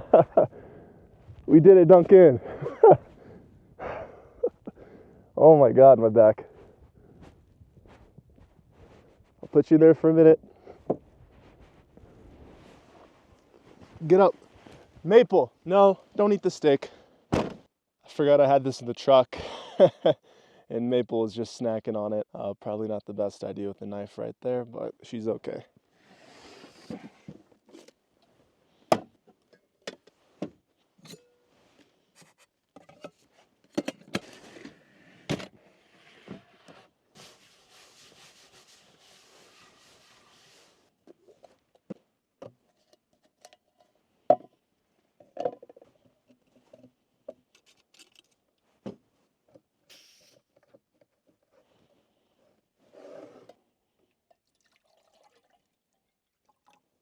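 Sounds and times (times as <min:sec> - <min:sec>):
utensils clinking and scraping: 0:31.0 - 0:31.4.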